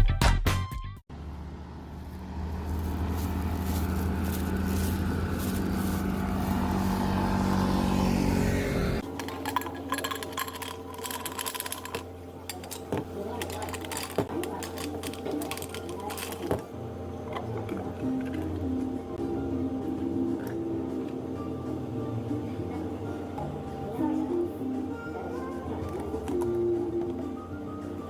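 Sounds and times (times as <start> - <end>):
low hum: 1.1 - 27.5
electric motor running: 1.2 - 9.1.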